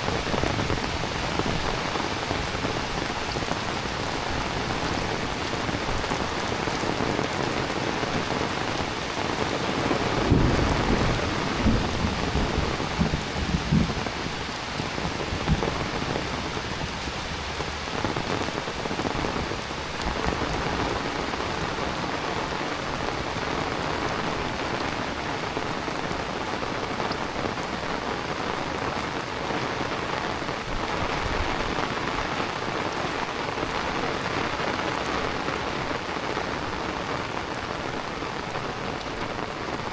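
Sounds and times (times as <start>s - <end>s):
thunder rumbling: 0.0s - 24.6s
heavy rain falling: 0.0s - 39.9s.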